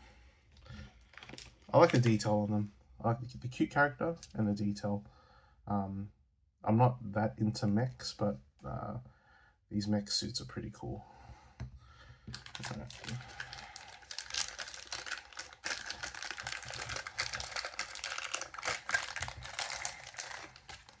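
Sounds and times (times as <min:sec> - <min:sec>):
wrapping crinkling: 0:00.9 - 0:02.4, 0:12.3 - 0:21.0.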